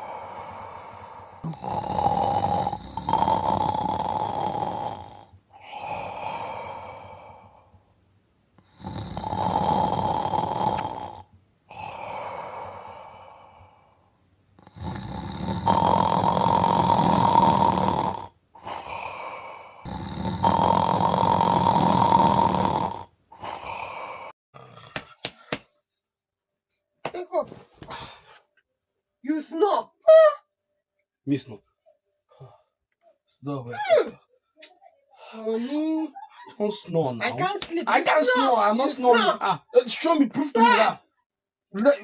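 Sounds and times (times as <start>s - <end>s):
man snoring heavily: 0.0s - 7.6s, 8.6s - 14.0s, 14.6s - 25.1s.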